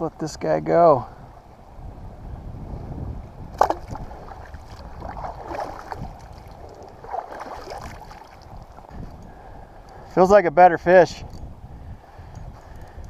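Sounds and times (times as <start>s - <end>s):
wind rumbling on microphone: 0.0s - 13.0s
water sloshing against a kayak hull: 3.5s - 9.2s
small splashes: 3.6s - 8.9s.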